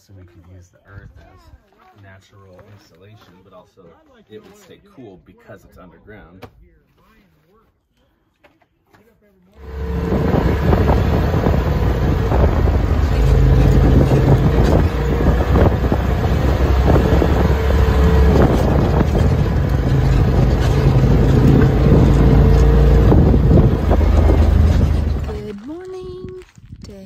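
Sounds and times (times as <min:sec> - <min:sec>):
off-road vehicle engine running: 0:09.6 - 0:26.1
wind buffeting microphone: 0:09.6 - 0:27.0.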